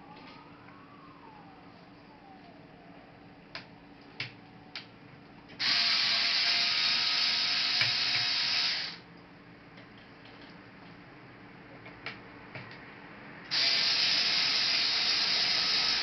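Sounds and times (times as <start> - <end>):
mechanical tool whirr: 5.6 - 9.0, 13.5 - 16.0.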